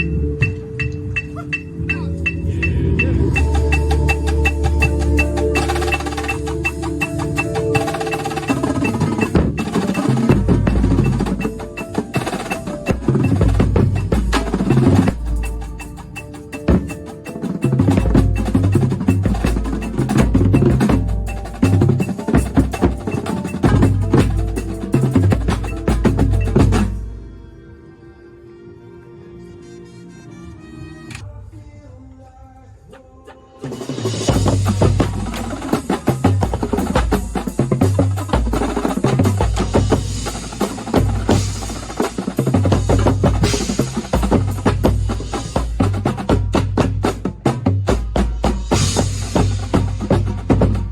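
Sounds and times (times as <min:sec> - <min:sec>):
sustained low bass tones: 0:00.0 - 0:11.6
rapid drum strokes: 0:00.0 - 0:27.2, 0:33.6 - 0:50.9
mallet keyboards: 0:00.0 - 0:27.4, 0:34.2 - 0:50.9.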